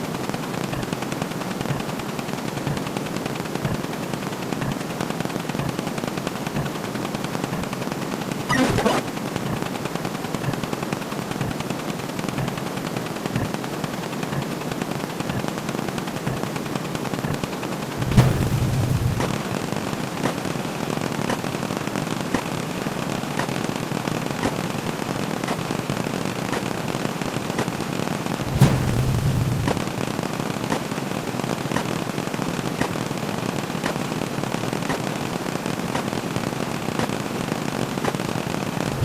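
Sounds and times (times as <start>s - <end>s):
fast rattle of clicky sound effects: 0.6s - 7.8s, 17.2s - 20.4s.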